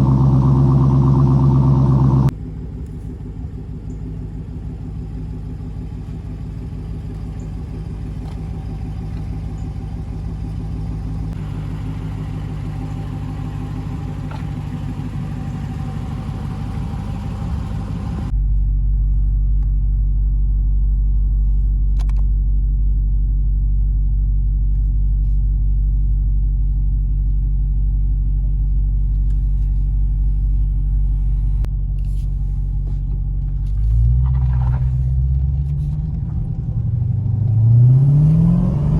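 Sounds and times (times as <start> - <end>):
engine revving: 0.0 - 2.4, 11.3 - 18.3, 33.8 - 38.9
car engine idling: 0.0 - 38.9.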